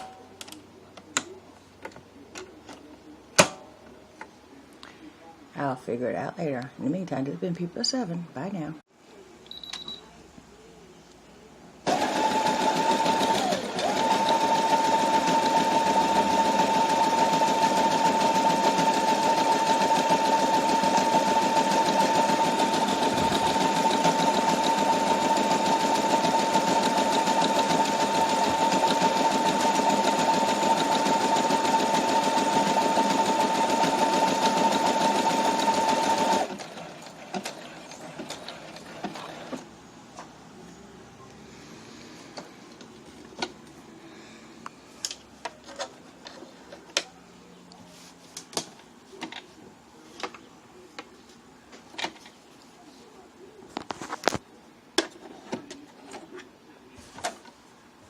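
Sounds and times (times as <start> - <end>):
sewing machine stitching: 11.9 - 39.6.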